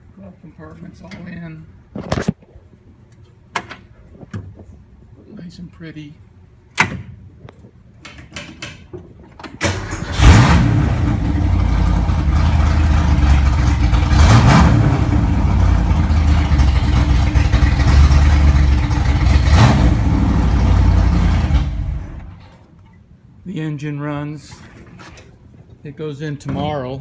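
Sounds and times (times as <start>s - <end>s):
starter motor cranking: 9.6s - 14.6s
engine revving: 9.7s - 22.4s
car engine running rough: 9.7s - 22.5s.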